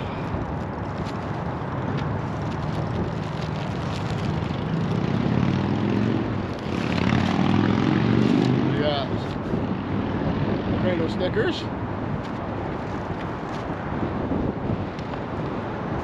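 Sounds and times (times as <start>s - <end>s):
packing rustling and clicking: 0.5s - 4.7s
passing vehicle engine hum: 1.4s - 10.8s.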